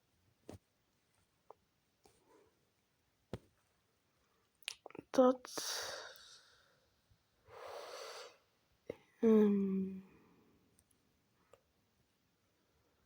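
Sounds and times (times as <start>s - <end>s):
person breathing out: 7.5s - 8.4s
person making wordless uhh: 9.2s - 10.1s.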